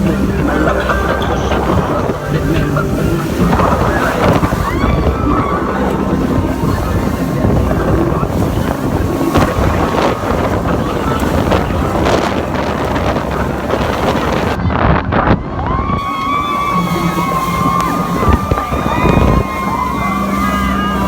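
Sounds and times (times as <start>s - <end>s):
water rushing: 0.0s - 15.2s, 15.9s - 21.0s
boat motor: 0.0s - 15.3s, 15.9s - 21.0s
wind buffeting microphone: 0.0s - 21.0s.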